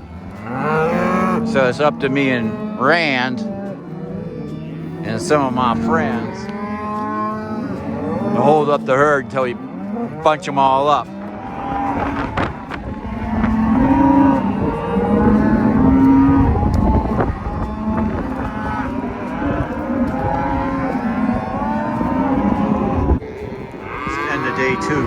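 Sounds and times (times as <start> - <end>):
cattle mooing: 0.0 - 25.0
wind rumble on microphone: 11.4 - 25.0.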